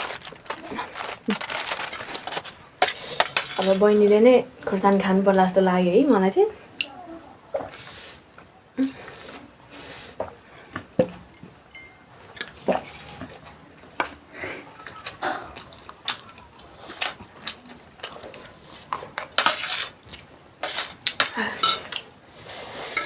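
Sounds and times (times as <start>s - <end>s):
cutlery clinking against dishes: 2.8s - 3.8s, 11.4s - 13.4s, 19.2s - 20.0s, 20.6s - 22.1s.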